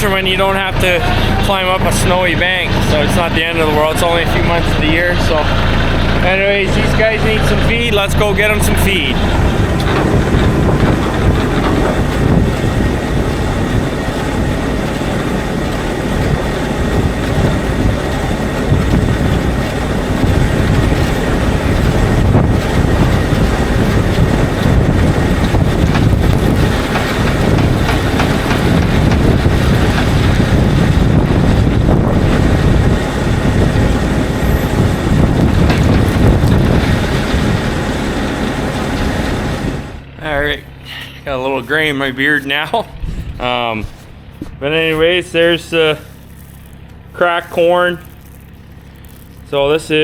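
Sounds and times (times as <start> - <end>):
knocks and rattles: 0.0 - 40.1
vehicle engine rumble: 0.0 - 50.0
wind on microphone: 7.7 - 40.0, 42.9 - 44.2.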